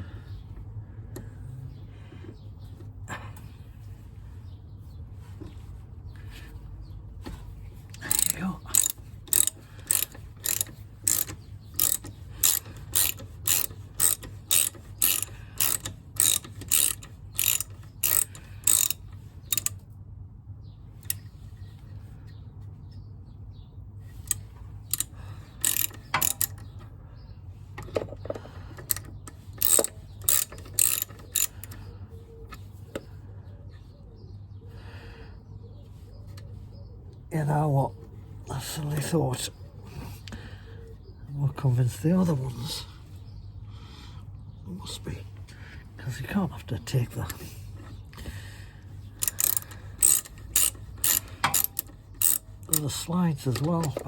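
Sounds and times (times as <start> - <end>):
socket ratchet clicking: 8.0 - 19.8, 24.2 - 26.9, 27.8 - 31.9, 49.1 - 52.8.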